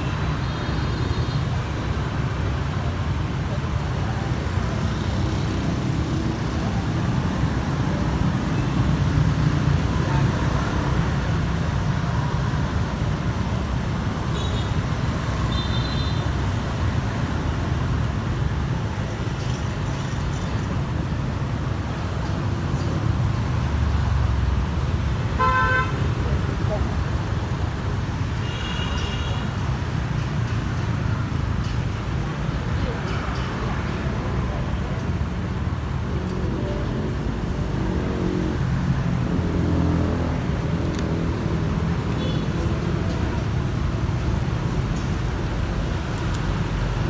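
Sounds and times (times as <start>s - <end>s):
low rumble of passing vehicles: 29.3s - 47.0s.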